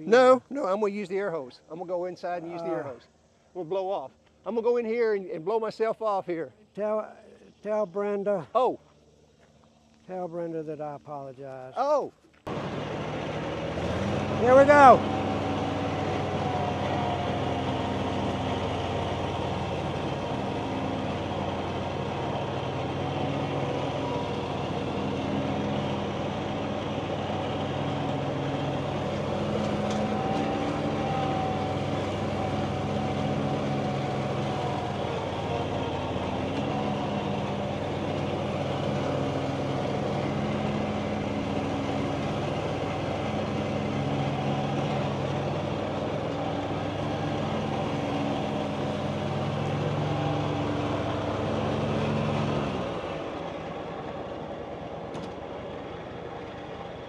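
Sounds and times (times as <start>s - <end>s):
engine running steadily: 12.3s - 57.0s.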